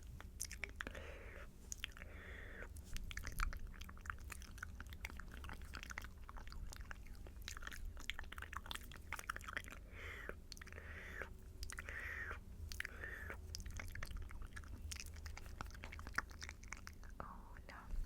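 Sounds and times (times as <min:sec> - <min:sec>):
breathy hiss: 0:09.8 - 0:13.4.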